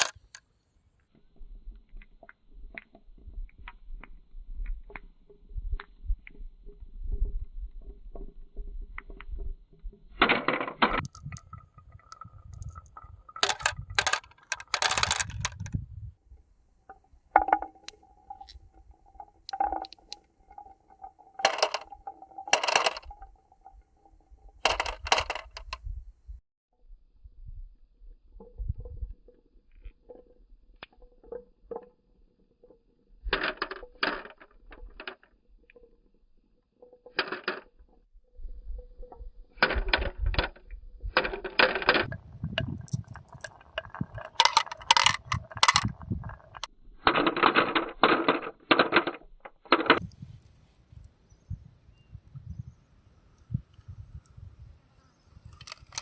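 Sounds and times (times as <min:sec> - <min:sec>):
marbles clattering down track: 0:00.0 - 0:00.4, 0:10.2 - 0:15.8, 0:16.9 - 0:25.8, 0:32.7 - 0:36.1, 0:36.8 - 0:37.9, 0:39.6 - 0:50.0, 0:55.5 - 0:56.0.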